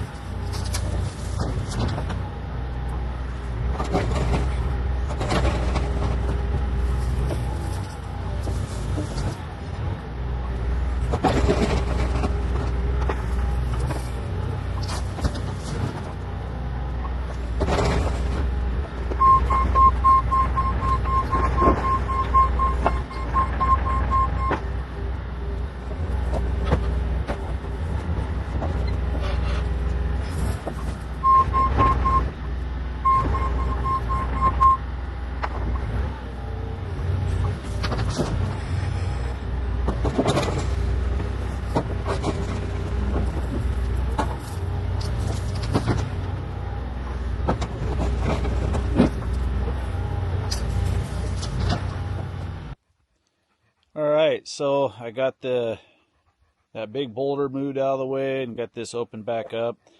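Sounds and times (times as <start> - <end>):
excavator diesel engine running: 0.0 - 52.8
rapid electronic beeping: 19.2 - 24.6.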